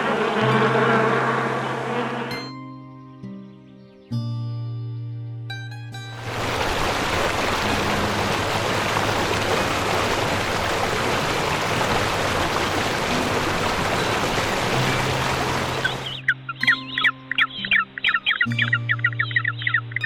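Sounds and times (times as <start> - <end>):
chirps: 14.1 - 20.0.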